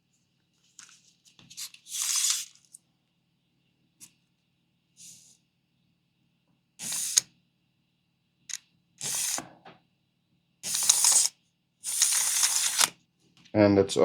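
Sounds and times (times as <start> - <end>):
tape measure click: 9.0 - 9.4, 10.7 - 11.3, 11.9 - 12.9
tape measure rattling: 10.7 - 11.3, 11.9 - 12.9.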